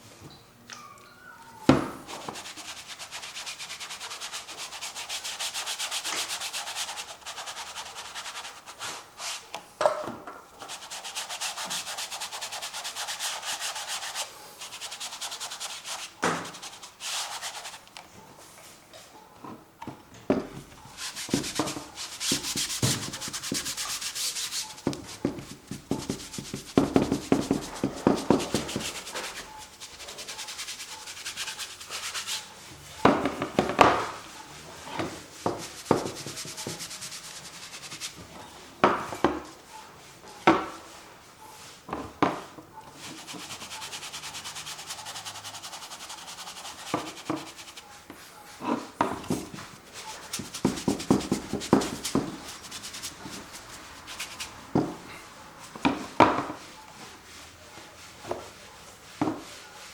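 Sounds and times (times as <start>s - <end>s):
paintbrush scrubbing on canvas: 2.0s - 9.5s, 10.6s - 17.8s, 20.9s - 33.0s, 34.0s - 38.3s, 43.0s - 48.3s, 49.3s - 54.7s.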